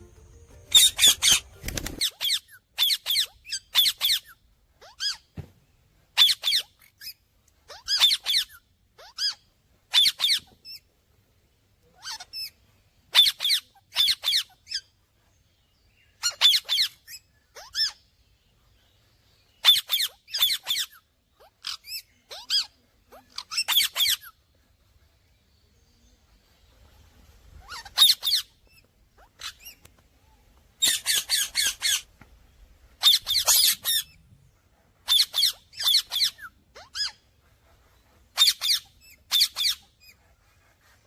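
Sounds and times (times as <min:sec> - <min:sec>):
parakeet squawking: 0:00.7 - 0:05.2, 0:07.7 - 0:10.4, 0:27.6 - 0:28.5, 0:33.0 - 0:34.2, 0:35.0 - 0:37.2.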